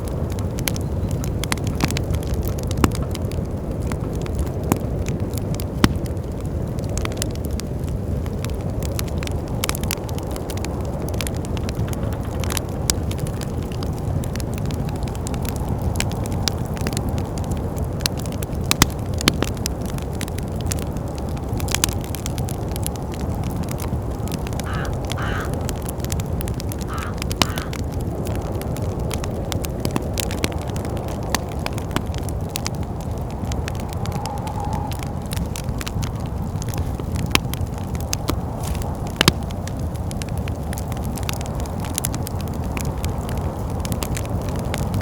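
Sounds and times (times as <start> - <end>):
wood fire crackling and popping: 0.0 - 45.0
wind rushing: 20.7 - 39.2.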